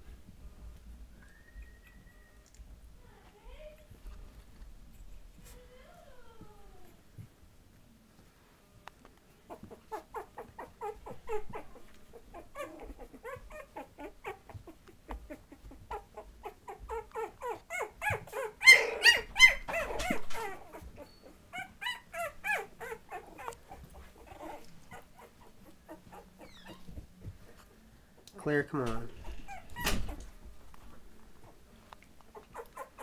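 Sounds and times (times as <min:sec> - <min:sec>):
puppies whining and yipping: 0:09.5 - 0:27.6, 0:29.2 - 0:30.5, 0:32.3 - 0:33.0.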